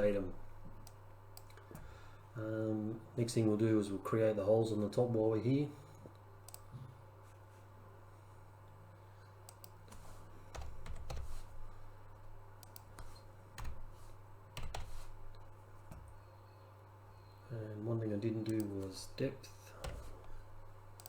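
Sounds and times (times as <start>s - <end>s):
keyboard keystrokes: 9.5s - 11.5s, 12.6s - 13.9s, 14.6s - 16.2s, 19.8s - 20.4s.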